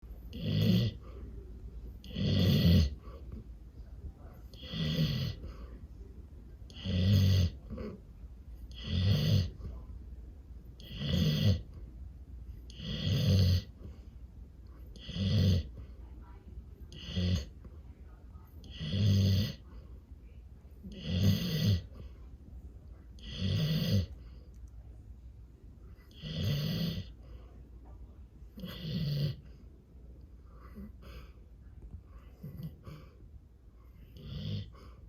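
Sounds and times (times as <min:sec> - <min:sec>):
dog snoring: 0:00.3 - 0:01.2, 0:02.0 - 0:03.4, 0:04.5 - 0:05.7, 0:06.7 - 0:08.0, 0:08.7 - 0:09.8, 0:10.8 - 0:11.8, 0:12.7 - 0:14.0, 0:14.8 - 0:15.9, 0:16.9 - 0:17.6, 0:18.6 - 0:19.7, 0:20.8 - 0:22.1, 0:23.2 - 0:24.3, 0:26.0 - 0:27.4, 0:28.6 - 0:29.5, 0:32.2 - 0:33.2, 0:33.9 - 0:35.0.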